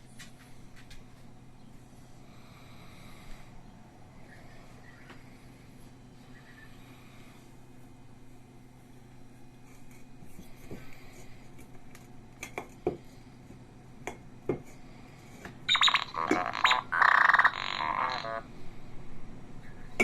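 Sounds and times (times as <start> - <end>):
electronic droid beeps and chirps: 15.7 - 18.4.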